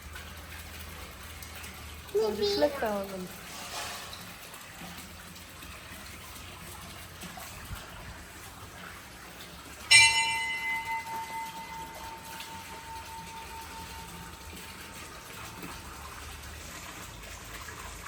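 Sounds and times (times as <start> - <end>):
metal temple bell ringing: 9.9 - 16.1.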